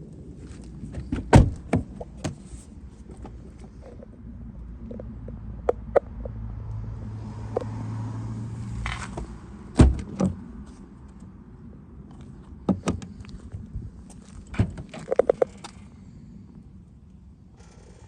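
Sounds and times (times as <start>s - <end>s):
car door thump: 0.9s - 2.4s, 9.8s - 10.4s.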